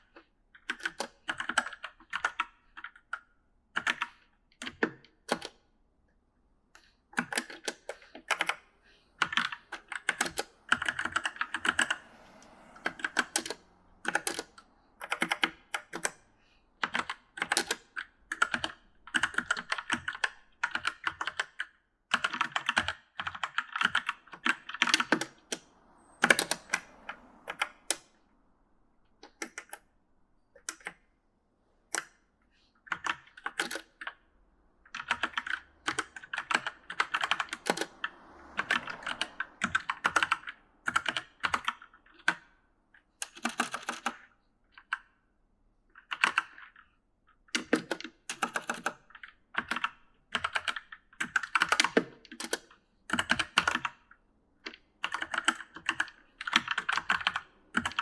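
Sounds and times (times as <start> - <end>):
mechanical keyboard typing: 0.6 - 5.6, 7.2 - 8.6, 9.2 - 12.0, 12.9 - 16.2, 16.8 - 25.6, 26.2 - 26.8, 32.9 - 34.2, 34.9 - 37.9, 38.6 - 42.4, 43.2 - 45.1, 45.9 - 46.8, 47.5 - 54.0, 54.6 - 58.0.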